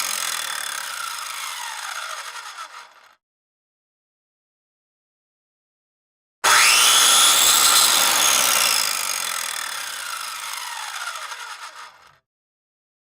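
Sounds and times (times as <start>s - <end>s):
power tool motor whining: 0.0s - 3.2s, 6.4s - 12.2s.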